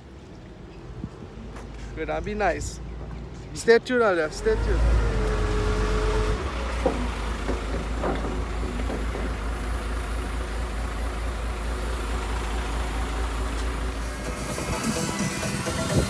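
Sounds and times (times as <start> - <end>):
boat engine rumble: 4.3 - 16.0.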